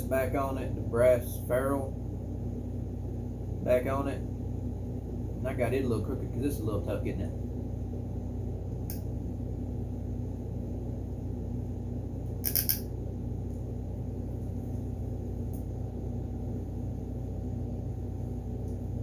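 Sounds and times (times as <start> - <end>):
low room hum: 0.0 - 19.0
sharp clicks of small objects: 12.4 - 12.9.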